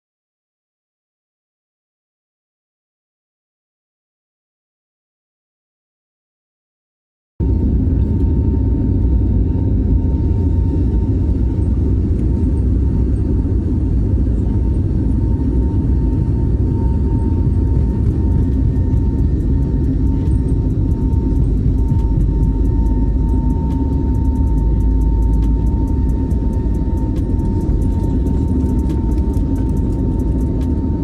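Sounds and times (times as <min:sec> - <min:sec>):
jet cabin engine rumble: 0:07.4 - 0:31.0
thin steady whine: 0:07.4 - 0:31.0.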